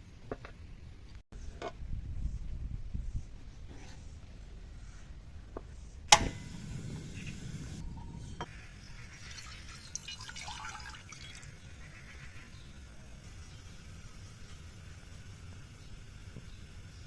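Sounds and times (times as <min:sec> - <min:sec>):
liquid trickling: 0:09.0 - 0:11.8.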